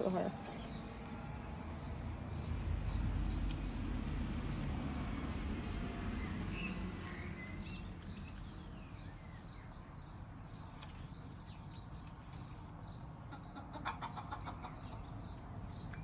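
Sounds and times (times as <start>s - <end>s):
chicken making soft sounds: 13.3s - 15.2s.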